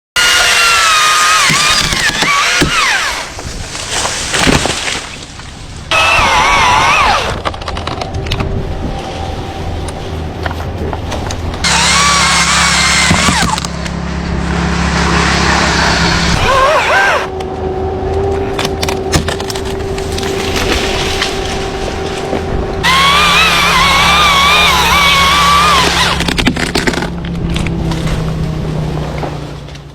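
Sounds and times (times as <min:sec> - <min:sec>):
electric chainsaw cutting wood: 0:00.2 - 0:03.4, 0:05.9 - 0:07.4, 0:11.6 - 0:17.3, 0:22.8 - 0:27.7
wood cracking: 0:00.2 - 0:08.6, 0:10.4 - 0:14.0, 0:18.4 - 0:29.9.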